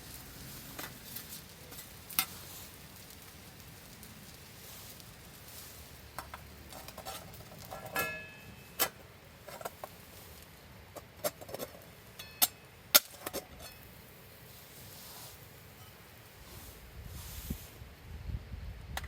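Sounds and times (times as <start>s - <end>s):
utensils clinking on tableware: 7.0s - 8.6s.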